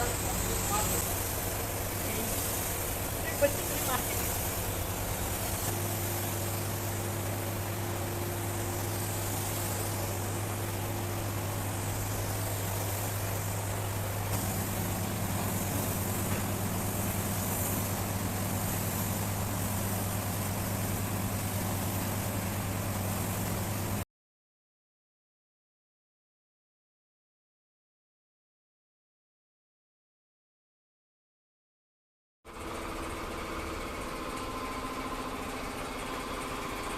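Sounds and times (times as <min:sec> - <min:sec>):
constant hiss: 0:00.0 - 0:24.0
low mechanical hum: 0:00.0 - 0:24.0, 0:32.6 - 0:36.9.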